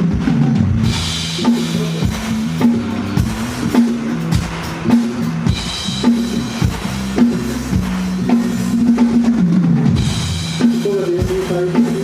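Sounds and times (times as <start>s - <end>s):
bass line: 0.0s - 12.0s
drum kit beat: 0.0s - 12.0s.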